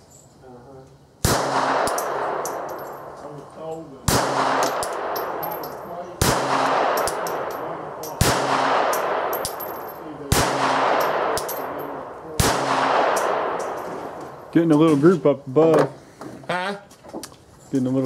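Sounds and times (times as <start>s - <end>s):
pistol shots with echo: 1.2s - 3.3s, 4.0s - 14.5s.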